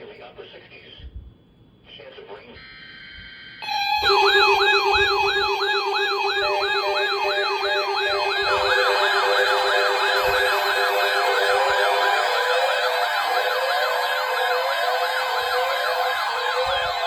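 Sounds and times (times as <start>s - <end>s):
second yelping siren: 3.6s - 17.0s
yelping electronic siren: 3.6s - 17.0s.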